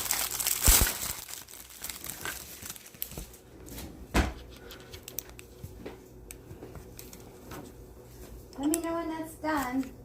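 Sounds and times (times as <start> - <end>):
crinkling: 0.0 - 3.8.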